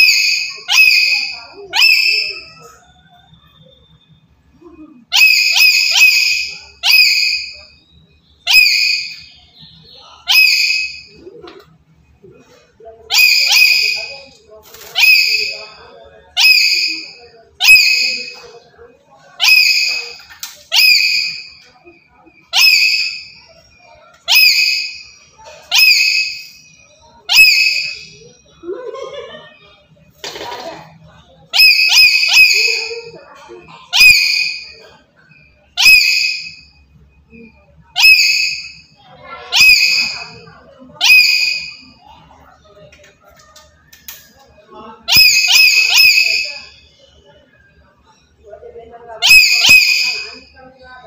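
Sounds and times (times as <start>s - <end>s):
parrot screeching calls: 0.0s - 3.2s, 5.1s - 7.8s, 8.4s - 9.4s, 10.2s - 11.2s, 13.1s - 18.5s, 19.4s - 21.6s, 22.4s - 23.6s, 24.2s - 28.3s, 31.5s - 34.9s, 35.7s - 36.8s, 37.9s - 42.0s, 45.1s - 46.8s, 49.2s - 50.5s.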